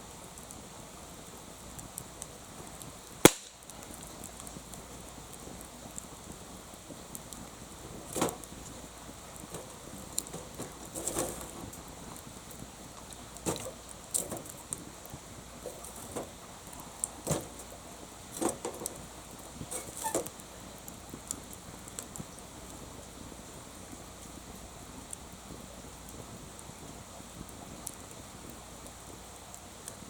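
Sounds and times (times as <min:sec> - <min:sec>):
wood fire crackling: 0:00.0 - 0:30.0.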